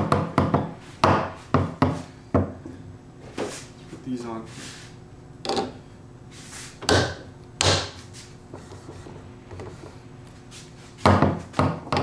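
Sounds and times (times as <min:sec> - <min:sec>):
knocks on a foosball table: 0:00.0 - 0:02.6, 0:06.8 - 0:08.0, 0:11.0 - 0:12.0.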